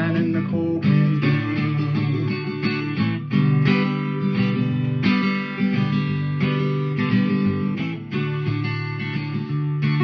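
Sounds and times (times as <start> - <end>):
guitar playing chords: 0.0 - 10.0.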